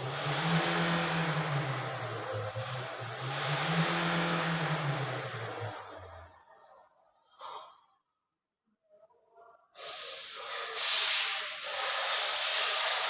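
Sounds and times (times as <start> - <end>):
loud steady hissing rush: 9.8 - 13.0.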